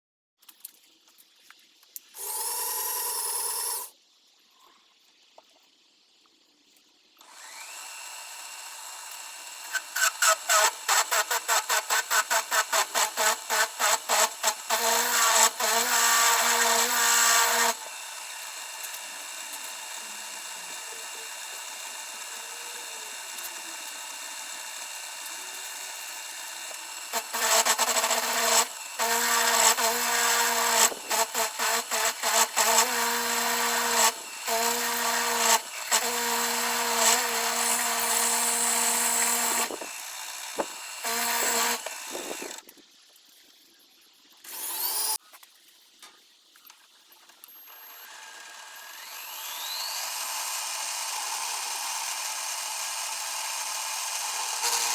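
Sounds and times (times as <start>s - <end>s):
metal cutting noise: 2.2s - 3.9s, 7.2s - 42.6s, 48.0s - 54.9s
machine tool motor running: 7.2s - 42.7s, 47.5s - 54.9s.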